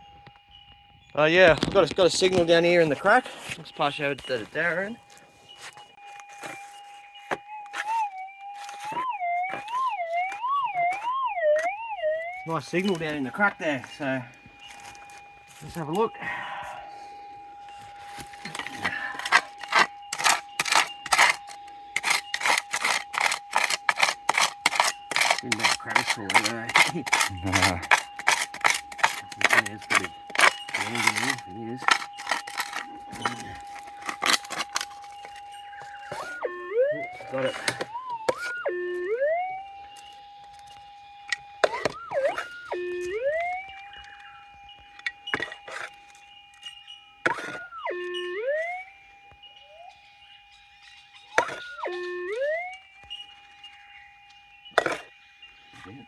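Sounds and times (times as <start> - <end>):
pick scraping dirt and rock: 1.3 - 8.0, 8.6 - 11.7, 12.4 - 39.0, 39.9 - 48.7, 51.2 - 52.4, 54.7 - 56.0
metal detector threshold hum: 2.0 - 55.1
thin steady tone: 2.6 - 56.0
sharp scraping clicks: 18.2 - 36.5.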